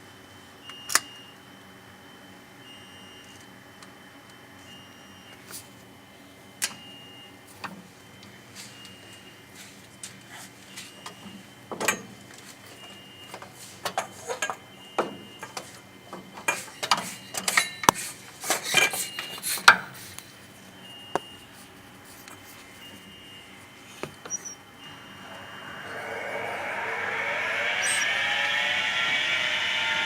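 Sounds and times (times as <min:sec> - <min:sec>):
rising motor-like whine: 0:24.5 - 0:30.0.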